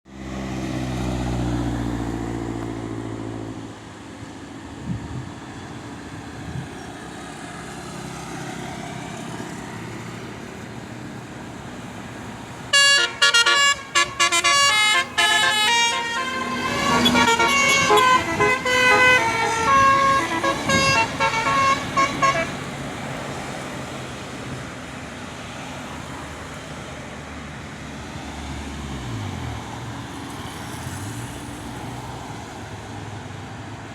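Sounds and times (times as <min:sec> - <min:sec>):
bus engine running: 0:00.1 - 0:28.2
road noise: 0:00.1 - 0:33.9
bus horn short notes: 0:12.7 - 0:22.6.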